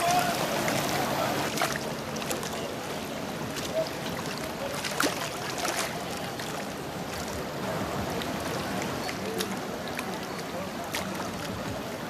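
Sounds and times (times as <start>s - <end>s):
river water splashing and lapping: 0.0s - 12.0s
sharp water slaps: 3.6s - 7.4s.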